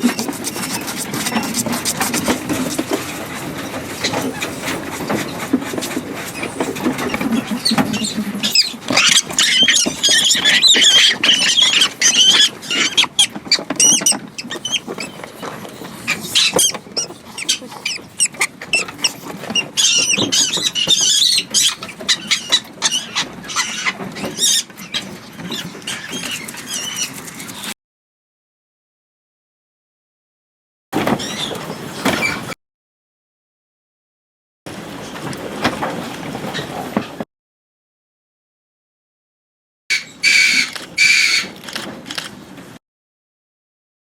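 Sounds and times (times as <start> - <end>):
mink squealing and chattering: 0.0 - 27.4, 39.9 - 41.6
sharp clicks and rattles: 40.7 - 42.4.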